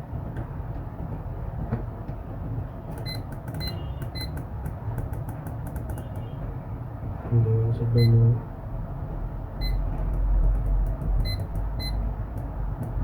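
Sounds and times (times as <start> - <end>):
steady low hum: 6.3 - 13.0.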